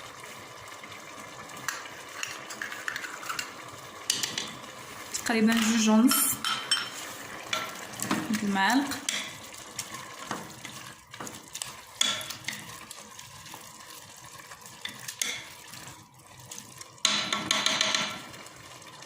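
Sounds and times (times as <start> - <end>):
food sizzling in oil: 0.0 - 19.0
spoon clinking in a pot: 1.7 - 4.6, 5.5 - 7.7, 9.0 - 9.4, 12.0 - 12.6, 14.8 - 15.5, 17.0 - 18.2.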